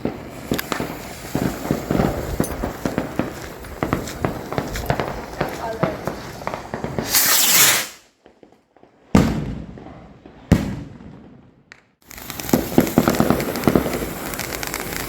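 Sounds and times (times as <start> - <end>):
rocket firework hiss: 0.0 - 8.2, 12.0 - 15.0
firework crackling: 0.0 - 8.4, 9.2 - 15.0
firework bangs: 0.0 - 15.0.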